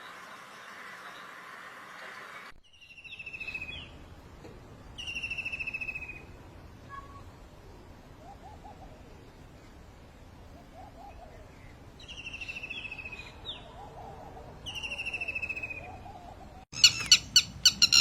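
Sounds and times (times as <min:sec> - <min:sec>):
bird trilled calls: 0:16.7 - 0:18.0.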